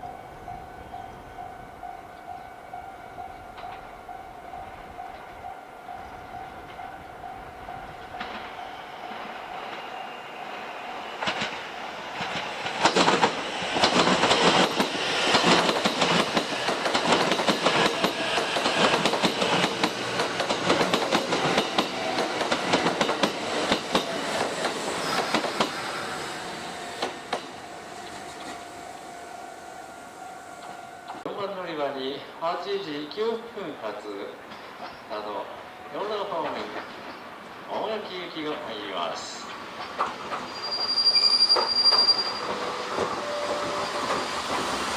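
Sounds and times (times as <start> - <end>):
electric train passing: 0.0 - 44.9
wheels clicking over rail joints: 11.2 - 29.0, 39.4 - 40.5.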